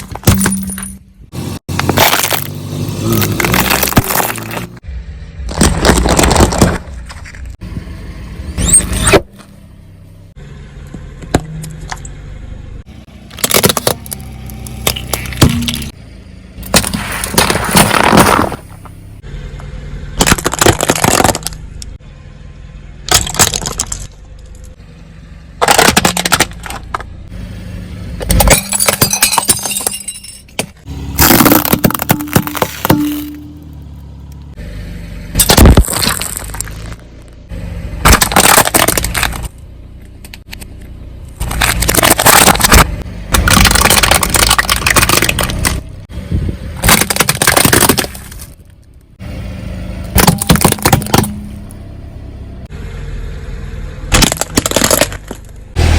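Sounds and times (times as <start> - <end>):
tyre crushing objects: 1.7 - 4.8, 5.4 - 7.4, 13.3 - 16.0, 16.6 - 18.9, 30.6 - 33.5, 35.4 - 37.0, 38.0 - 39.5, 41.4 - 45.8, 46.8 - 48.6, 50.1 - 51.6.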